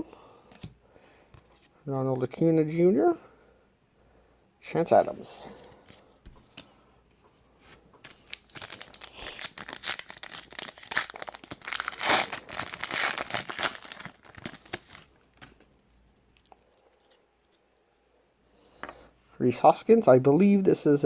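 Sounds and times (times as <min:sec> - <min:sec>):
plastic wrapper tearing and crinkling: 0:08.0 - 0:15.7.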